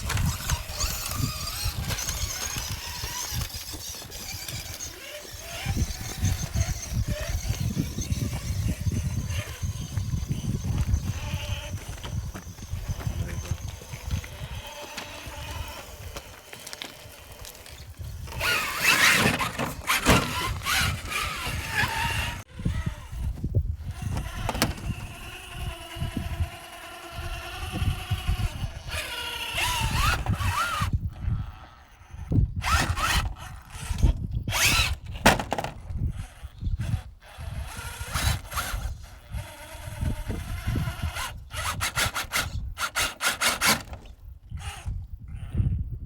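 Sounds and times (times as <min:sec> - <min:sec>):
scrapes and clicks: 0:00.0 - 0:31.0
electric motor whining: 0:00.0 - 0:46.0.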